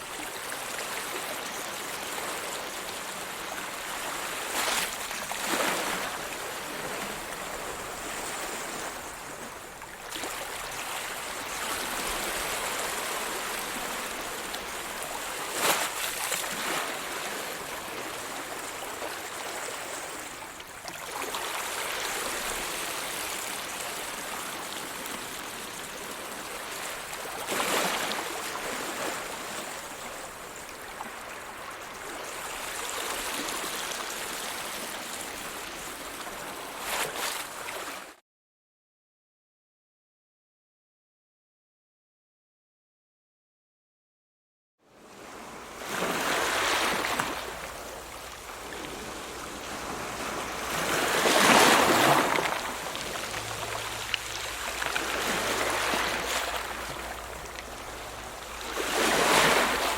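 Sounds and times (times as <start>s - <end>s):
waves breaking: 0.0s - 38.1s, 45.2s - 59.9s
ocean waves washing in: 45.1s - 59.9s.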